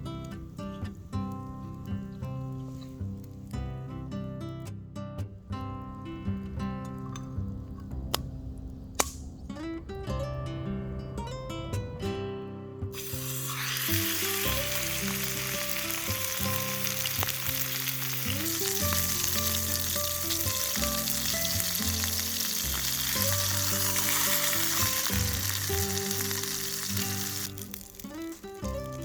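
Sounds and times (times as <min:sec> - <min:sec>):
background music: 0:00.0 - 0:29.0
food sizzling in a pan: 0:13.0 - 0:29.0.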